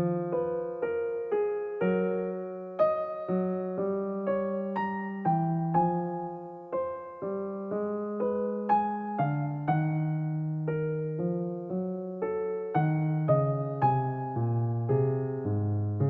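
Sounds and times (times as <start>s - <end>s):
slow piano melody: 0.0s - 16.0s.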